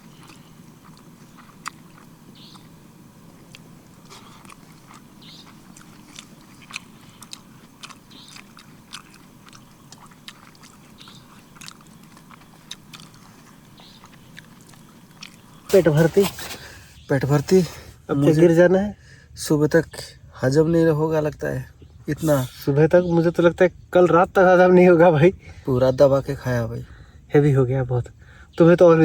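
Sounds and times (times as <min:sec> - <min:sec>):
small clicks and crackles: 0:00.0 - 0:16.8
person chewing food: 0:00.0 - 0:18.4.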